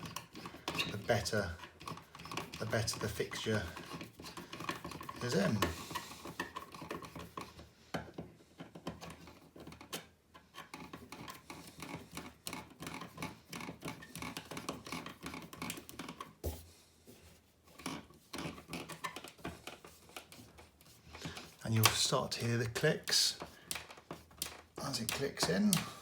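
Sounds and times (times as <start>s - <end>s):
screws clicking while tightened: 23.1s - 26.0s.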